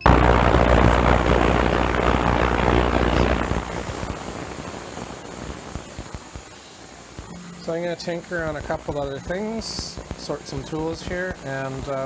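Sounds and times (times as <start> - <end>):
crackling hiss: 0.0 - 12.0
ultrasonic cleaner buzzing hum: 0.0 - 12.0.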